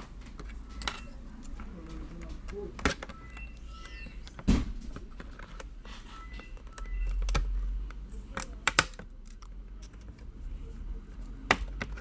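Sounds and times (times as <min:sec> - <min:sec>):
plastic clips snapping: 0:08.3 - 0:10.1.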